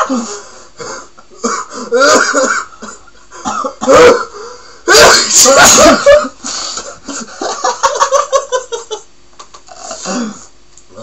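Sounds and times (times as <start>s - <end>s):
person coughing: 1.4s - 6.4s, 9.8s - 10.5s.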